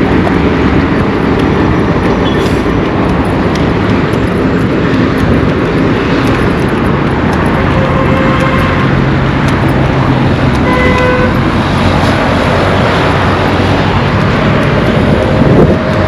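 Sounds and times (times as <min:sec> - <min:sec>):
road traffic passing: 0:00.0 - 0:16.0
car horn toot: 0:07.6 - 0:09.0, 0:10.6 - 0:11.4.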